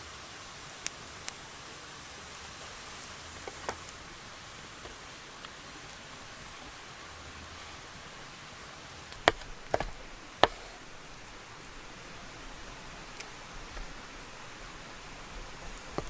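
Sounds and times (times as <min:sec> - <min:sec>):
background hiss: 0:00.0 - 0:16.0.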